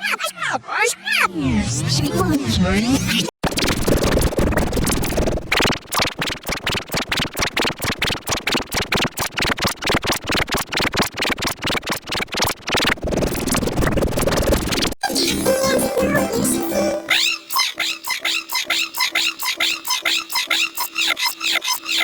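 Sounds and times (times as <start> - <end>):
chopped sample stutter: 1.3 - 17.2.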